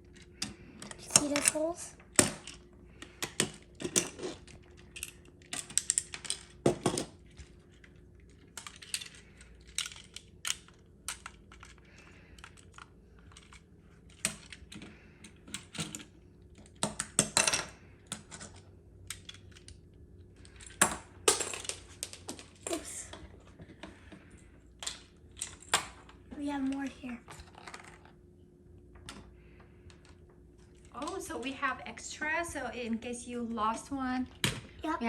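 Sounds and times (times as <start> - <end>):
plastic toy parts clicking: 0.1 - 1.6, 2.2 - 17.4.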